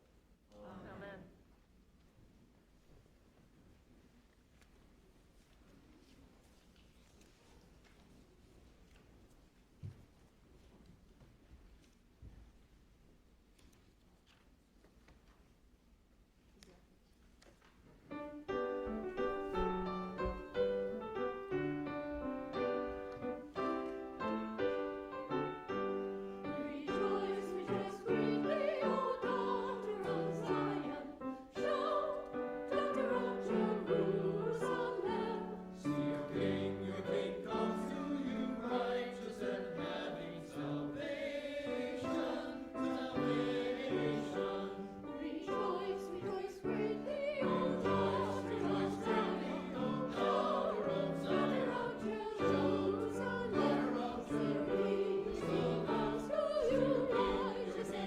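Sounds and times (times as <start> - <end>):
voices singing a hymn: 18.5 - 58.0.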